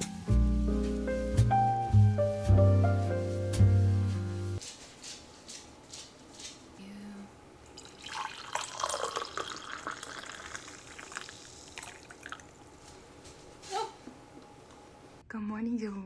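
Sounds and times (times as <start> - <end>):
small water drips: 7.6 - 13.0
water running and splashing: 7.7 - 13.0.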